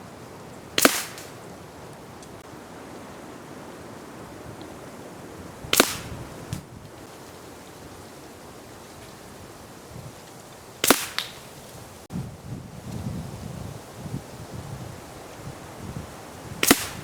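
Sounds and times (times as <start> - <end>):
air rifle shots: 0.8 - 1.5, 5.7 - 6.6, 10.8 - 11.6, 16.6 - 17.0.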